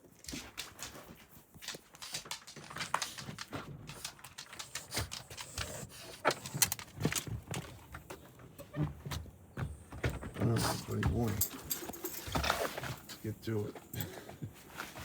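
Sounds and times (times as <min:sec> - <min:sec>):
dog footsteps clicking: 0:00.0 - 0:15.0
dog breathing: 0:02.0 - 0:08.0, 0:09.6 - 0:13.2, 0:13.8 - 0:15.0.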